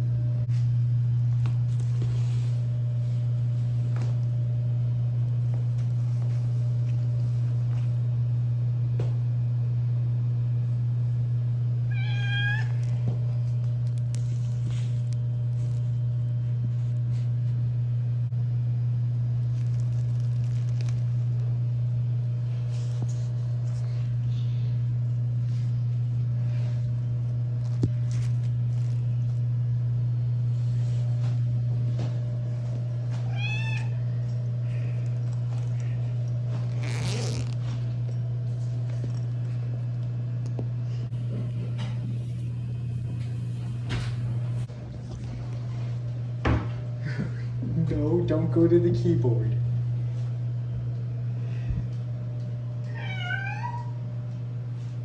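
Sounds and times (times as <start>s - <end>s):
loud steady low hum: 0.0s - 55.0s
cat meowing: 11.9s - 12.8s, 33.2s - 34.0s, 52.9s - 54.0s.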